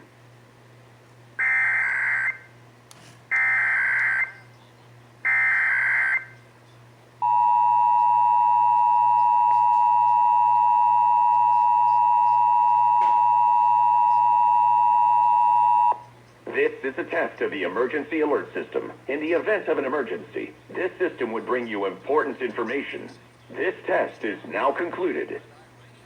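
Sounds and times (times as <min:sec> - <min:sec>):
two-tone attention signal: 0:07.2 - 0:16.0.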